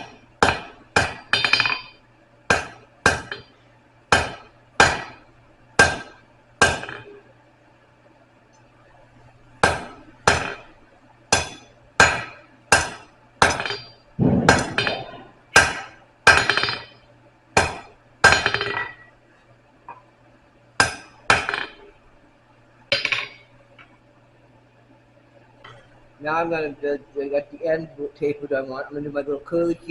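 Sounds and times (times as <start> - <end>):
hammer ringing on anvil: 0.0 - 5.2, 11.3 - 17.0, 17.6 - 19.1, 20.8 - 21.8, 22.9 - 23.5.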